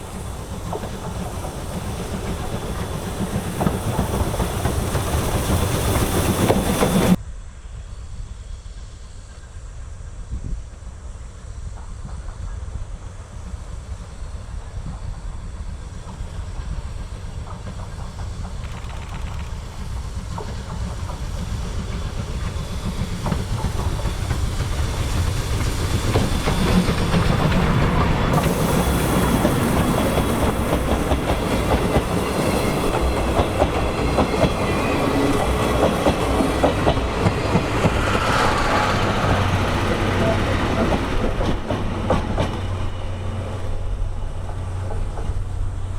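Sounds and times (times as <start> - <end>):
wheels clattering over rail joints: 0.0 - 7.2, 17.3 - 45.9
steam train passing: 0.0 - 45.9.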